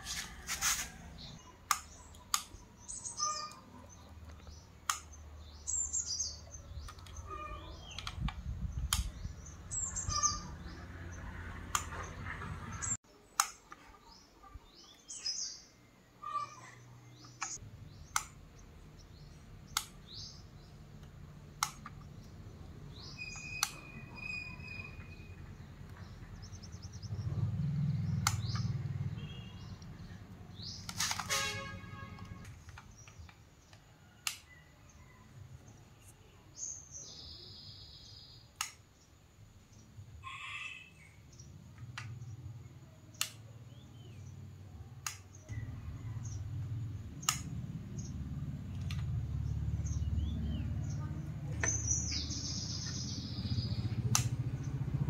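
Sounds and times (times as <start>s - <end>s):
small birds chirping: 0.0s - 55.0s
sharp clicks: 1.6s - 2.6s, 4.2s - 5.2s, 7.8s - 9.2s, 11.6s - 12.1s, 13.4s - 13.8s, 17.2s - 18.6s, 19.6s - 22.4s, 23.0s - 24.4s, 28.1s - 28.7s, 30.6s - 34.5s, 38.6s - 39.0s, 43.1s - 43.5s, 45.0s - 45.6s, 47.2s - 48.1s, 53.9s - 54.7s.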